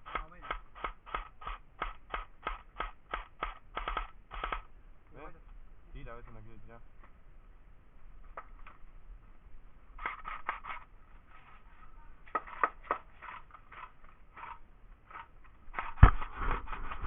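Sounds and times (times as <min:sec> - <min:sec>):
short scrapes and knocks: 0:10.0 - 0:17.0.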